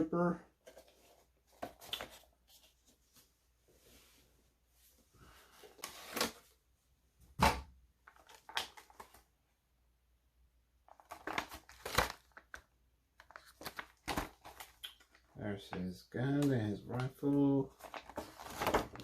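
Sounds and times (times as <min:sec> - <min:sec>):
plastic and cardboard crinkling: 0:08.0 - 0:09.3, 0:10.8 - 0:19.0.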